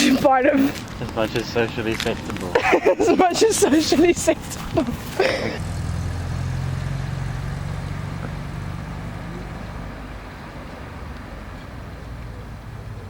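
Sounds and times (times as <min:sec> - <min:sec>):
vehicle engine rumble: 0:04.3 - 0:13.0.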